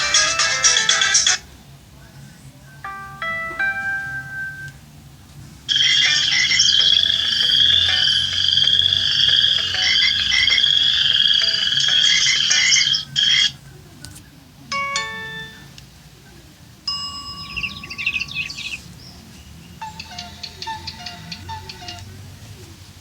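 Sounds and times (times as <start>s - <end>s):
plucked melody ringtone: 0.0s - 1.4s, 2.8s - 4.8s, 5.7s - 13.5s, 14.7s - 15.8s, 16.9s - 18.8s, 19.8s - 22.0s.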